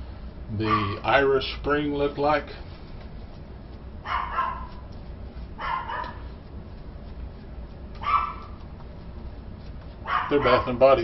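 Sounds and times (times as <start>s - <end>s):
dog barking: 0.6s - 1.0s, 4.0s - 4.8s, 5.6s - 6.3s, 8.0s - 8.6s, 10.0s - 10.8s.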